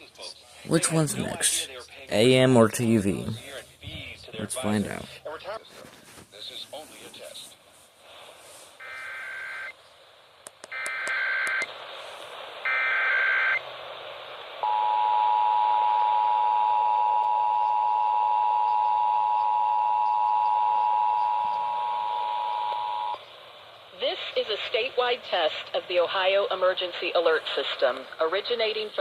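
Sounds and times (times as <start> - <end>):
sharp clicks: 10.4 - 11.7
warbling data tone bursts: 15.0 - 23.2.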